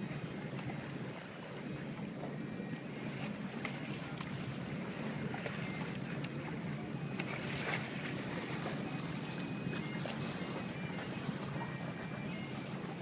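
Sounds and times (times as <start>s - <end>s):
rushing water: 0.0s - 13.0s.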